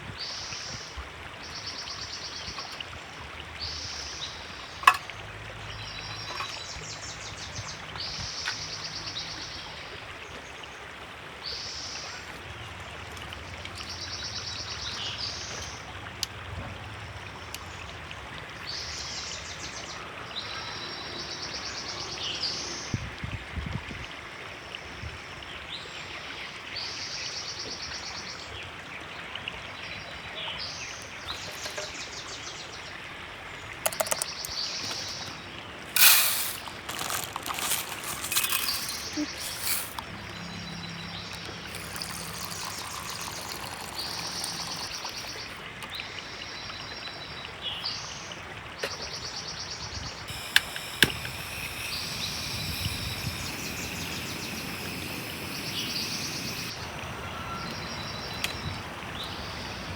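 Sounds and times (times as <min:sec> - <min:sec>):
river water flowing: 0:01.2 - 0:19.4, 0:30.8 - 0:49.3, 0:50.3 - 0:59.9
birds singing trills: 0:33.9 - 0:59.9.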